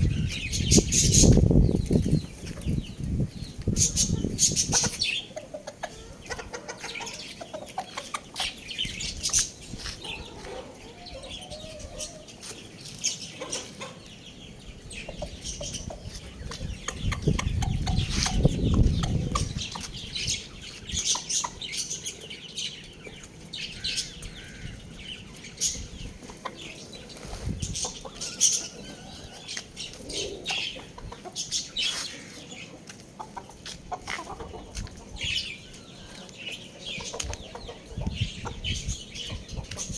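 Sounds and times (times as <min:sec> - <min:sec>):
young chickens clucking: 0:00.0 - 0:39.9.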